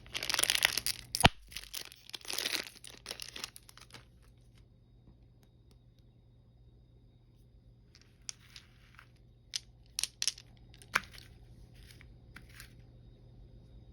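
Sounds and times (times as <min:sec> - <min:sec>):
candy packaging crinkling: 0:00.0 - 0:04.3, 0:08.3 - 0:12.7.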